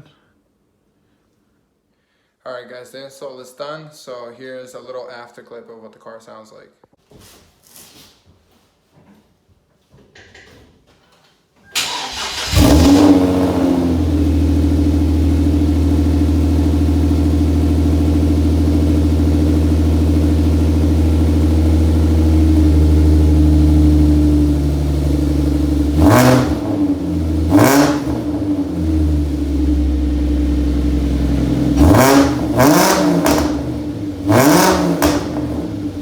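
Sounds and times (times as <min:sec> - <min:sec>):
car engine cranking: 0:11.8 - 0:36.0
car engine idling: 0:11.8 - 0:36.0
engine revving blips: 0:25.1 - 0:30.5, 0:31.1 - 0:36.0.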